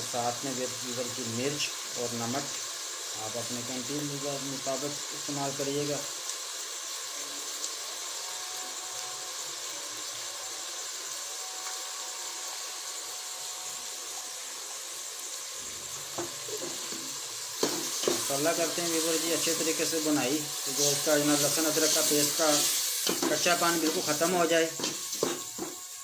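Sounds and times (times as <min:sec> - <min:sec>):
curry frying sizzle: 0:00.0 - 0:26.0
knock: 0:25.2 - 0:25.8.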